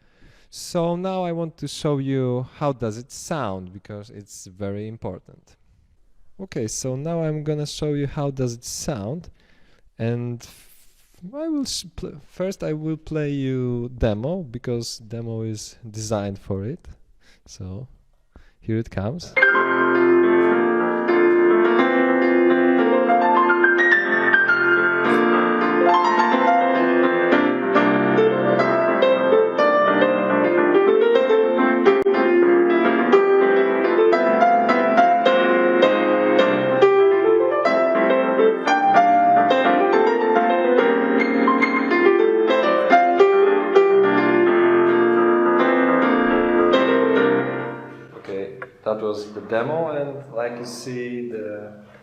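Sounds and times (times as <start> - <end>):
digital piano piece: 19.3 - 51.2.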